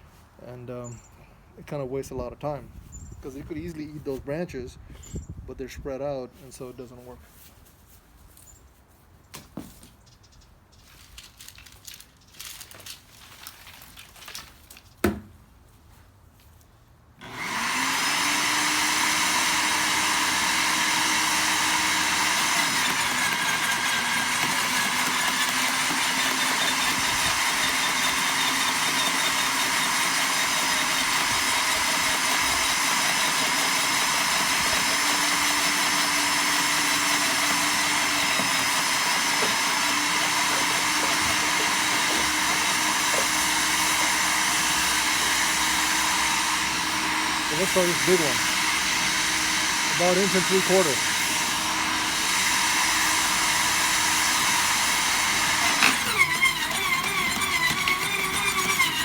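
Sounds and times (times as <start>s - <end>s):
electric motor whirring hum: 17.2s - 59.0s.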